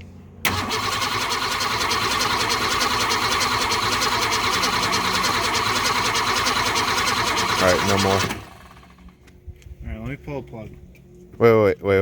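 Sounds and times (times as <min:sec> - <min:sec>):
starter motor cranking engine: 0:00.5 - 0:09.1.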